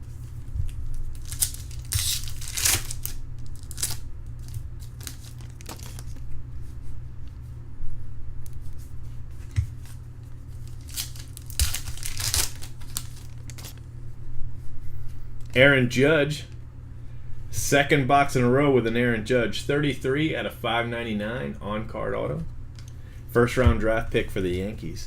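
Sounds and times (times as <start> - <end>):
foil rustling: 0.0 - 6.7, 9.4 - 13.9
foil wrapper tearing: 0.9 - 6.2, 10.6 - 13.8.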